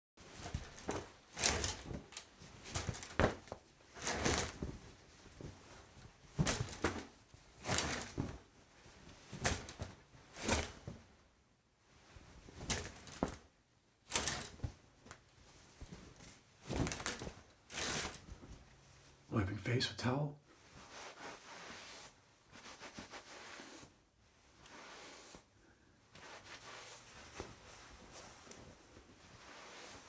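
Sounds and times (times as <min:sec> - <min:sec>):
shower curtain pulled along rod: 0:00.2 - 0:04.8, 0:05.4 - 0:08.4, 0:09.3 - 0:11.0, 0:14.1 - 0:14.7, 0:15.6 - 0:18.5, 0:20.6 - 0:25.5, 0:26.2 - 0:30.0
towel rubbing over body: 0:20.6 - 0:24.0, 0:26.2 - 0:30.0.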